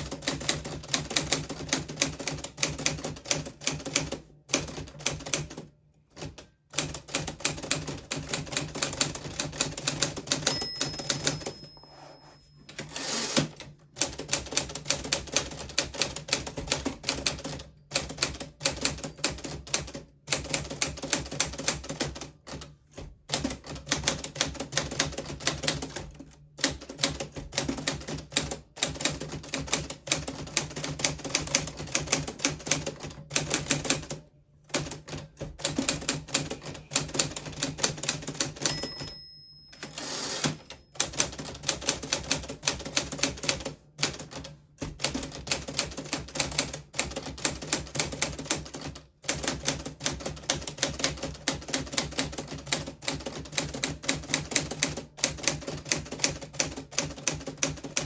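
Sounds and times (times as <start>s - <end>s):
typewriter bell ringing: 10.2s - 13.5s, 38.4s - 41.4s
typewriter carriage rushing: 12.8s - 13.6s, 39.8s - 41.9s.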